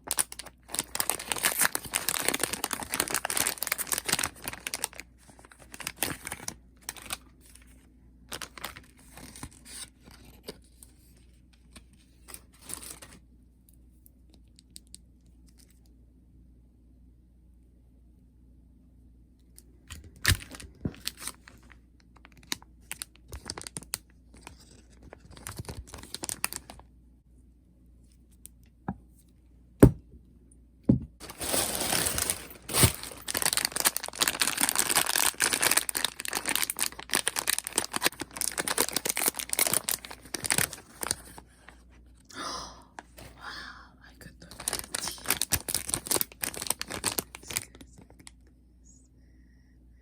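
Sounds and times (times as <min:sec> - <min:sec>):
packaging tearing and crinkling: 0:00.0 - 0:07.7, 0:08.3 - 0:10.4, 0:12.2 - 0:13.2, 0:20.0 - 0:26.8, 0:31.2 - 0:41.8, 0:44.4 - 0:48.3
packaging rustling: 0:00.0 - 0:10.9, 0:20.1 - 0:26.8, 0:31.2 - 0:41.9, 0:44.4 - 0:48.2.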